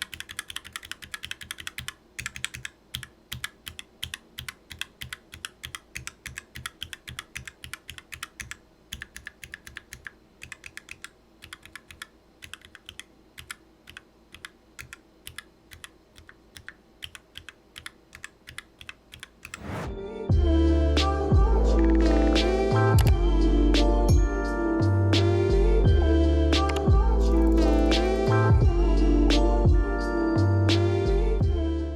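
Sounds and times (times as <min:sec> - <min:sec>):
mechanical keyboard typing: 0:00.0 - 0:19.7.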